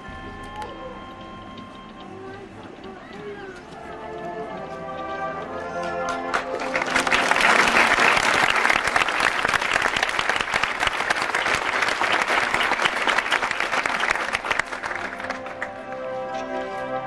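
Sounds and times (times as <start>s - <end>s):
audience applauding: 5.6s - 16.2s.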